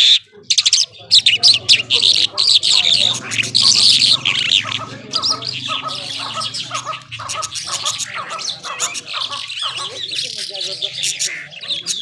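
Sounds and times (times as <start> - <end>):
lark warbling and chirping: 0.0 - 12.0
low hum: 1.1 - 8.6.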